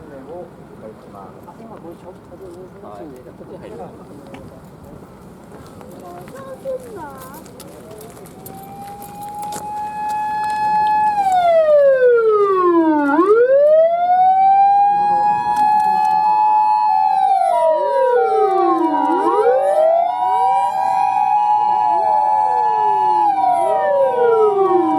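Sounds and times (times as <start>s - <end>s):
wailing sirens: 8.2s - 24.9s
two-tone hi-lo siren: 8.4s - 24.9s.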